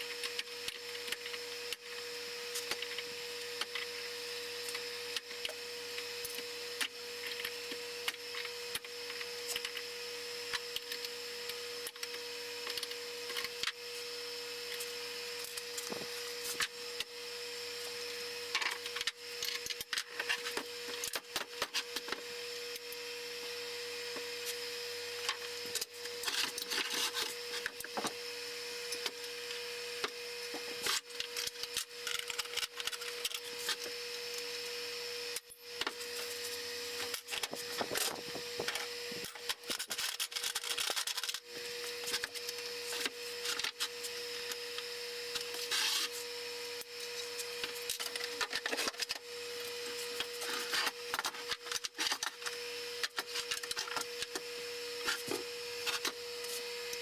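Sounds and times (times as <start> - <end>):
tools clicking and scraping: 18.5 - 23.0, 25.2 - 28.2, 28.9 - 34.7, 35.3 - 57.0.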